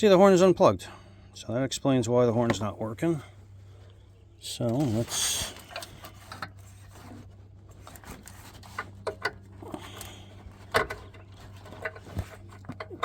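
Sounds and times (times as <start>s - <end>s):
steady low hum: 0.0s - 13.0s
hands rustling wiring: 4.6s - 13.0s.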